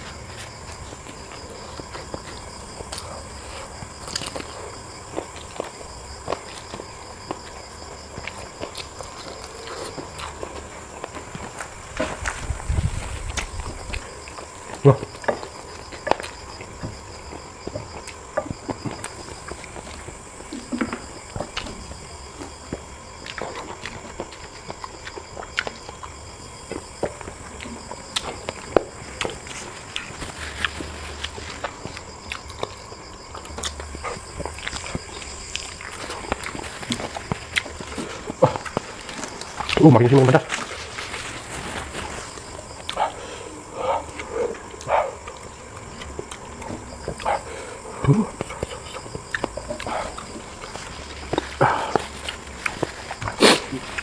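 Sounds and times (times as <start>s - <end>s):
close chewing: 0.0s - 54.0s
lip-smacking and sucking clicks: 44.0s - 54.0s
mouth slurps and smacks: 51.3s - 54.0s.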